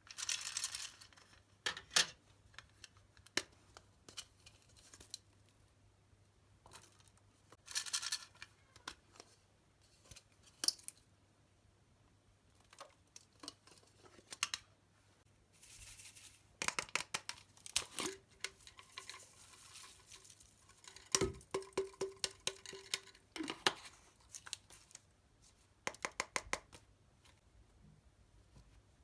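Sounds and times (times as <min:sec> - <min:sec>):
crinkly rustle: 0:15.5 - 0:16.6, 0:17.5 - 0:21.1.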